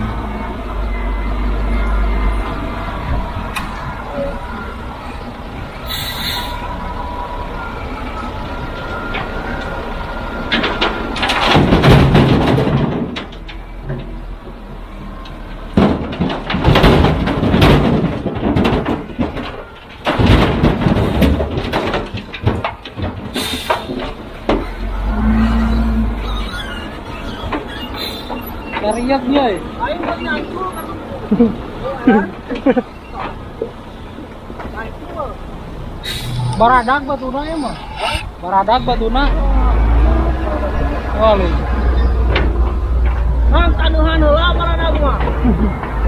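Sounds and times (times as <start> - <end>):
heavy machinery engine rumble: 0.0 - 46.0
loud clattering and banging: 10.4 - 30.7, 36.1 - 46.0.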